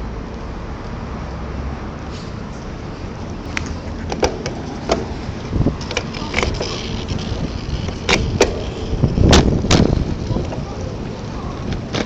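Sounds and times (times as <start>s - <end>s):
sharp ticks and knocks: 5.8s - 10.0s.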